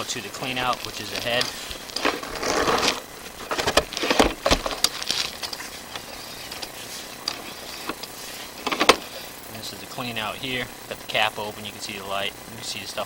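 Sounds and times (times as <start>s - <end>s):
faint steady background noise: 0.0s - 13.0s
clattering bursts: 0.6s - 9.3s.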